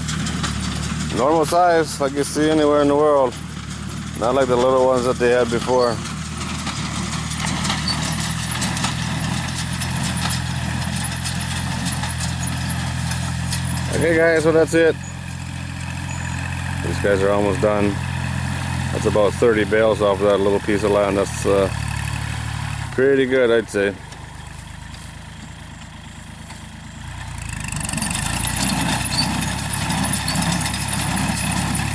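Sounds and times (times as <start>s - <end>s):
baler clicking and clattering: 0.0s - 18.0s, 28.2s - 31.9s
tractor engine running: 0.0s - 31.9s.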